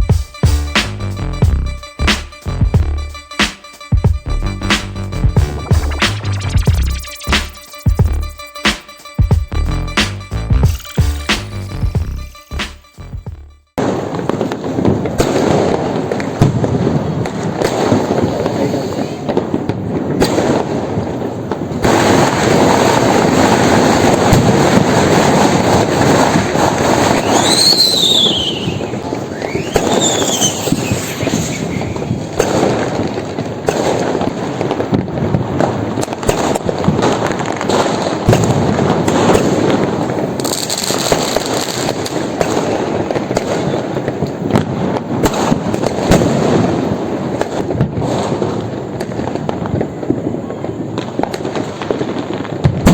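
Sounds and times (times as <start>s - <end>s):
firecrackers banging and crackling: 13.8s - 52.9s
whistling rocket: 26.8s - 32.9s.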